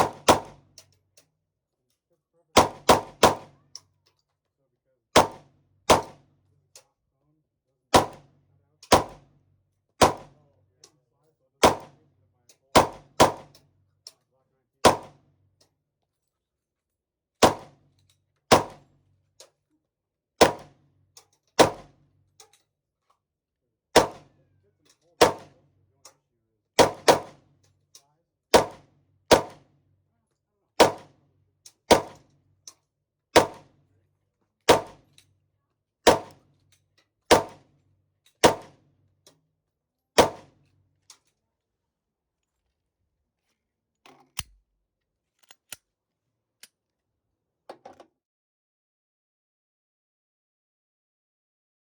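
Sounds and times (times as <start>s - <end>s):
pistol gunshots: 0.0s - 0.6s, 2.6s - 3.5s, 5.2s - 6.2s, 7.9s - 8.2s, 8.9s - 9.2s, 10.0s - 10.3s, 11.6s - 12.0s, 12.8s - 13.5s, 14.8s - 15.2s, 17.4s - 17.7s, 18.5s - 18.8s, 20.4s - 20.7s, 21.6s - 21.9s, 24.0s - 24.3s, 25.2s - 25.5s, 26.8s - 27.4s, 28.5s - 29.6s, 30.8s - 31.1s, 31.9s - 32.2s, 33.4s - 33.6s, 34.7s - 35.0s, 36.0s - 36.4s, 37.3s - 37.6s, 38.4s - 38.7s, 40.2s - 40.5s.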